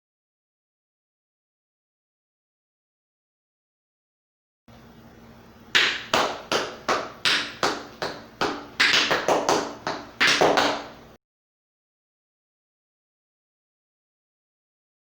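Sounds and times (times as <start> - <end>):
tap shoes on hard floor: 5.8 - 11.0.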